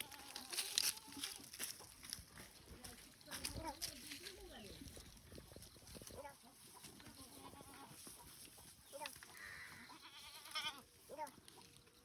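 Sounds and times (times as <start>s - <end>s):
goats bleating faintly: 9.3s - 11.3s.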